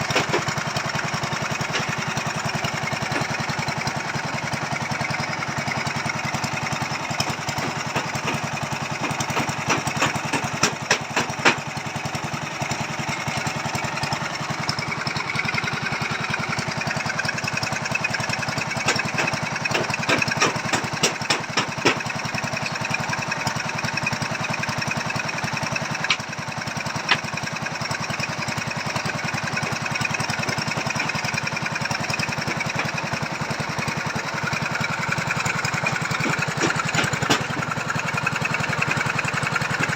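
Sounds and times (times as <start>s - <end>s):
small petrol engine running: 0.0s - 39.9s
sharp metallic knocks: 7.5s - 11.7s, 18.8s - 22.9s, 26.0s - 26.3s, 33.8s - 38.0s.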